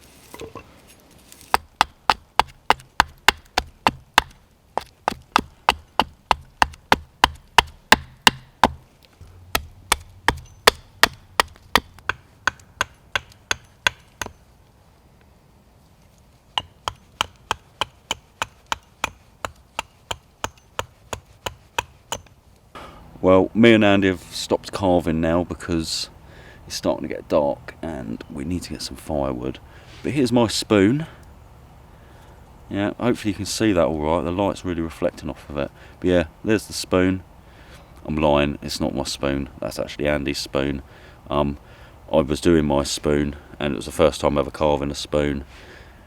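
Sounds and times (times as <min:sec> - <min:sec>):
axe chopping wood: 0:01.4 - 0:08.8, 0:09.5 - 0:14.4, 0:16.6 - 0:22.3.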